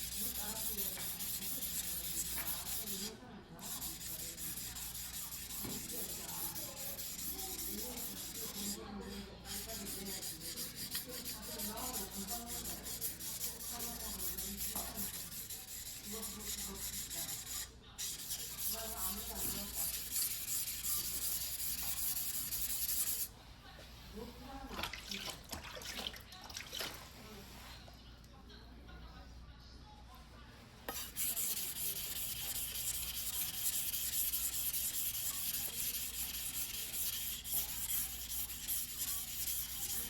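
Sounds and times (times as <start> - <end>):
knife blade scraping on whetstone: 30.9 - 40.0.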